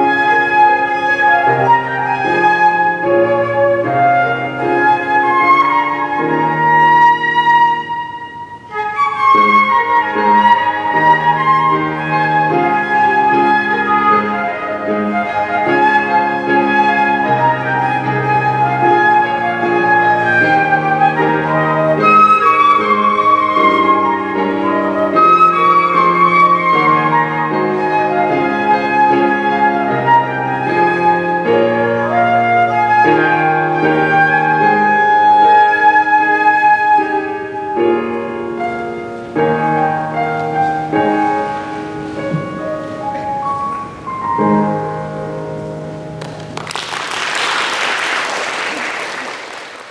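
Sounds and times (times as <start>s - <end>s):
solo flute melody: 0.0s - 46.0s.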